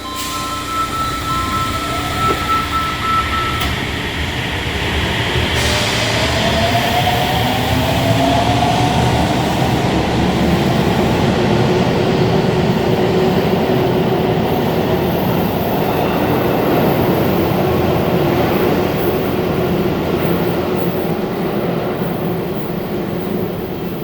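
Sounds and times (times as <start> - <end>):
train motor whine: 0.0 - 6.1
train wheels rumbling: 0.0 - 24.0.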